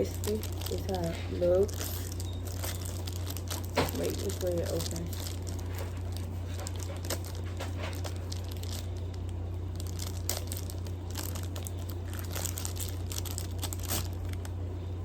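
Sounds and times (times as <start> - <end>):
packaging crinkling and tearing: 0.0 - 14.6
steady low hum: 0.0 - 15.0.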